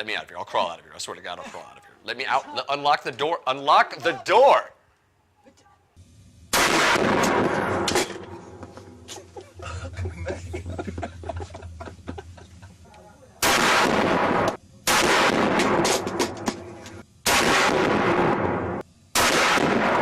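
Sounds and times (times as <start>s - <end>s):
gunshot blasts: 6.5s - 8.4s, 13.4s - 20.0s.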